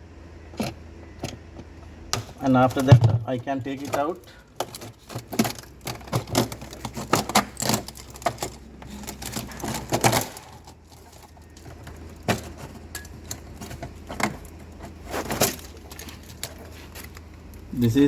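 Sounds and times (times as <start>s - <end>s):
clicks snaps and scrapes: 3.8s - 17.7s.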